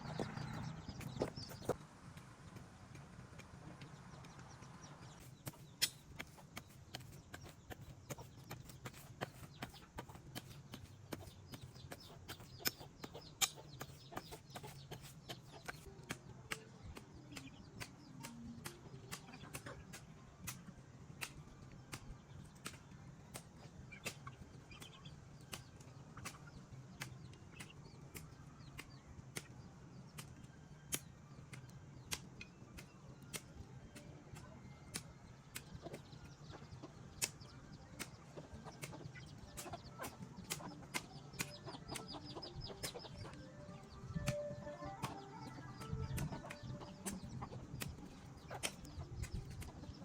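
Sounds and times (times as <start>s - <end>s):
chickens clucking: 0.0s - 1.8s, 5.2s - 20.6s, 35.5s - 50.0s
small birds chirping: 0.0s - 1.8s, 2.5s - 50.0s.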